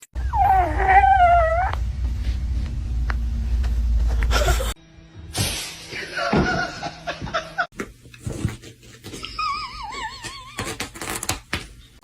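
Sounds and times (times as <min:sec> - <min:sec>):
steady low rumble: 0:00.2 - 0:04.8.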